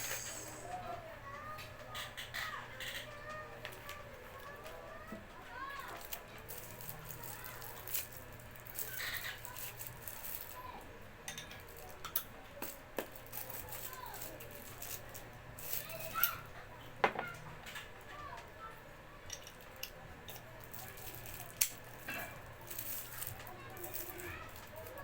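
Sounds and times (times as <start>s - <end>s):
tools and packaging rattling: 5.9s - 10.7s, 11.3s - 16.1s, 19.3s - 25.0s.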